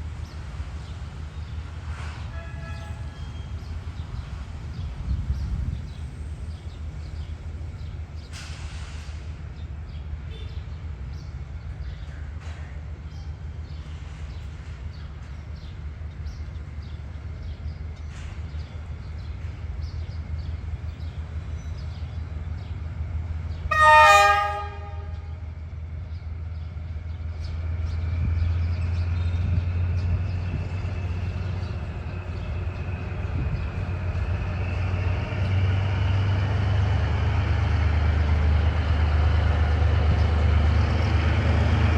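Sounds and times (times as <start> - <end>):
diesel locomotive rumbling: 0.0 - 41.9
train horn blast: 2.1 - 3.4, 23.7 - 25.5.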